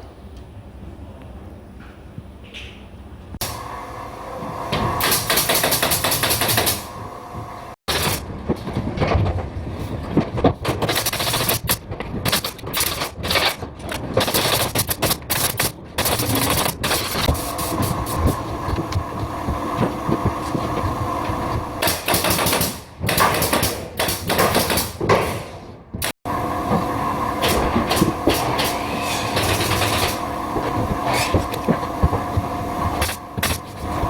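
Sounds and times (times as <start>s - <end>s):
low machine hum: 0.0s - 5.4s, 17.3s - 21.8s, 26.3s - 34.0s
fastening tool shots: 5.0s - 6.9s, 21.8s - 25.5s.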